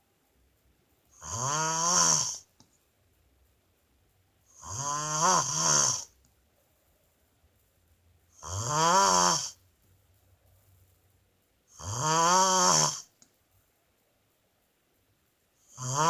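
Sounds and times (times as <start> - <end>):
woman snoring: 1.2 - 2.5, 4.5 - 6.2, 8.4 - 9.6, 11.8 - 13.1, 15.7 - 16.0.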